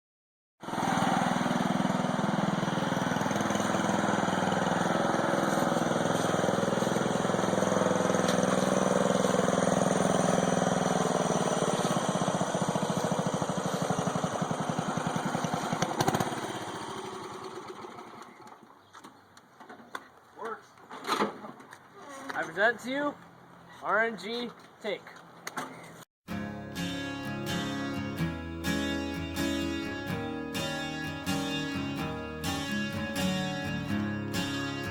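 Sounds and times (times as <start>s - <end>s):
lawn-mower engine running: 0.6s - 18.8s, 26.8s - 34.9s.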